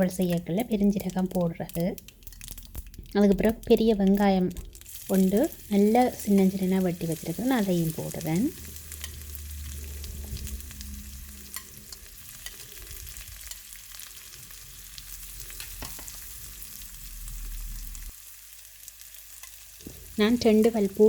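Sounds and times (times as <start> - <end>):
seeds popping and crackling: 0.0 - 13.8
onion sizzling in hot oil: 0.0 - 21.0.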